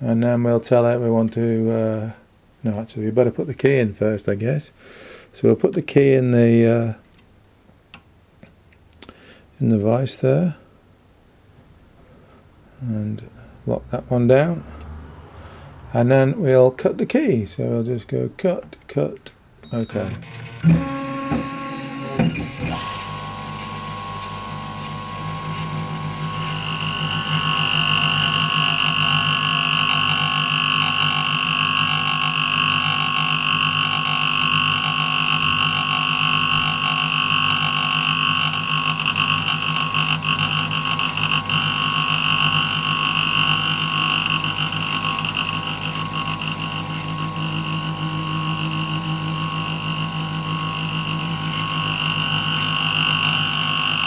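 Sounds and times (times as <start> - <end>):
high whine: 19.7 - 54.0
grinder motor running: 19.8 - 54.0
stepper motors pulsing hum: 19.8 - 54.0.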